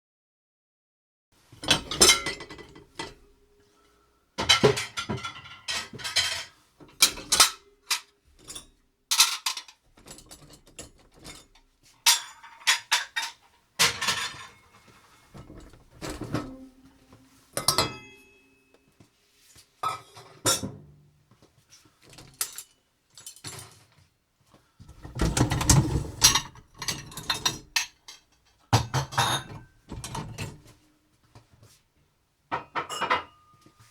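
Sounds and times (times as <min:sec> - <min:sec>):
dishes and cutlery clinking: 0:01.6 - 0:03.4, 0:04.4 - 0:18.6, 0:25.2 - 0:30.7, 0:32.5 - 0:33.9.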